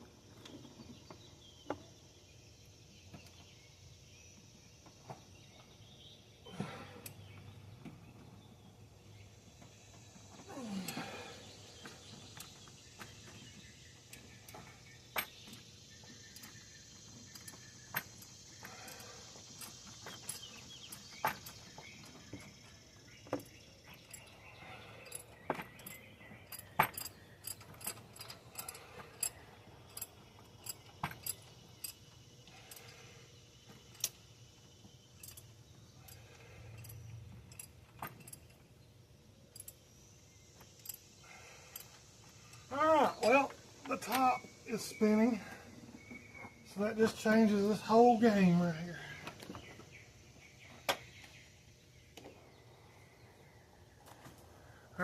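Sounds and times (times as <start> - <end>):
hand tools clinking on metal: 23.4 - 33.0.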